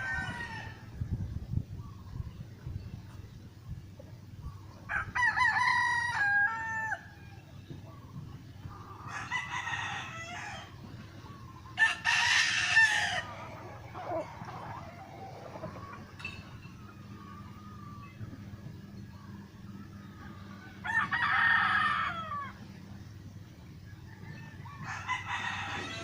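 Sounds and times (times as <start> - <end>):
rooster crowing: 0.0 - 1.0, 4.9 - 7.2, 9.1 - 10.8, 11.8 - 15.9, 20.6 - 22.6, 24.0 - 26.0.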